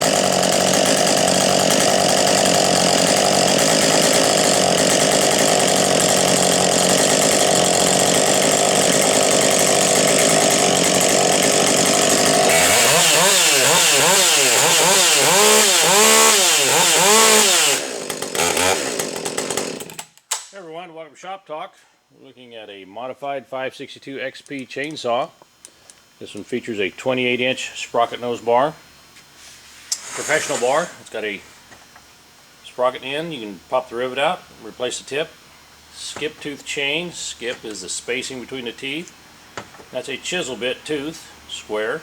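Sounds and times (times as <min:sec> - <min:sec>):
chainsaw engine revving: 0:00.0 - 0:20.1.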